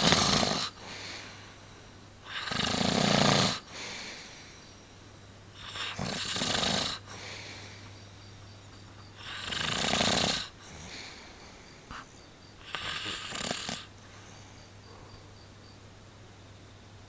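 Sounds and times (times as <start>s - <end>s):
person snoring: 0.0s - 1.2s, 2.3s - 4.3s, 5.6s - 7.8s, 9.2s - 11.2s, 12.6s - 13.9s
steady low hum: 0.0s - 17.0s.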